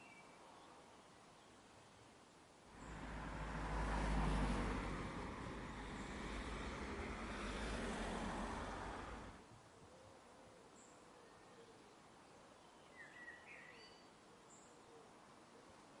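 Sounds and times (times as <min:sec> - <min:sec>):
motor vehicle passing: 0:02.7 - 0:09.4.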